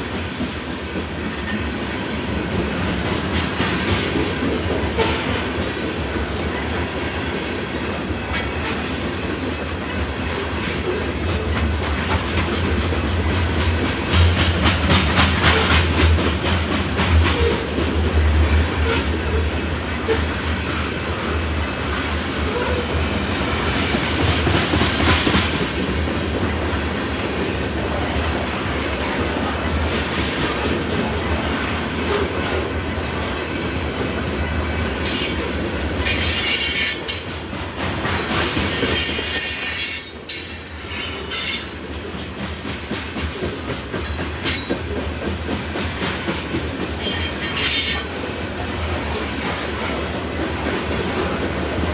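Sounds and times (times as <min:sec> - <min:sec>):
train wheels rumbling on rail: 0:00.0 - 0:51.9
high-pitched wheel squeal: 0:35.1 - 0:37.2, 0:38.4 - 0:41.8.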